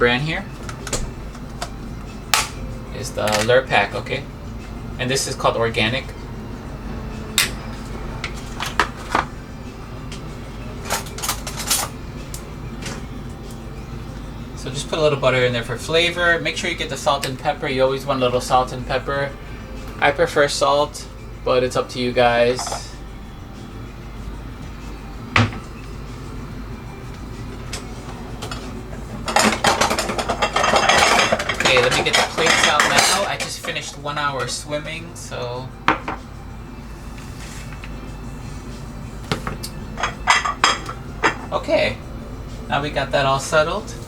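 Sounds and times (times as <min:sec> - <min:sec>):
kitchen utensils clicking: 0:29.3 - 0:33.8.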